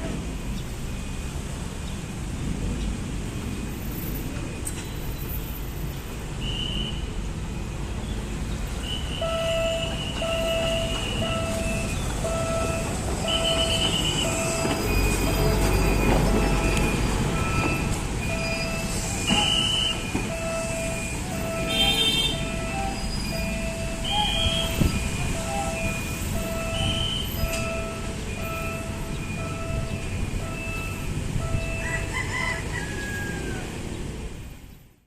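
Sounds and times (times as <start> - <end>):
excavator engine running: 9.2 - 31.8
high-pitched squeals: 9.2 - 32.1
repeating warning beep: 9.2 - 32.1.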